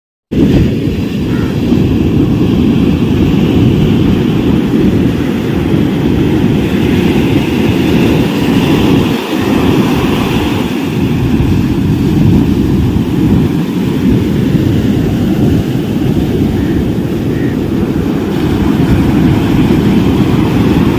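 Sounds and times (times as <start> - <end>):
waves washing on beach: 0.3 - 20.9
wind rumble on microphone: 0.3 - 20.9.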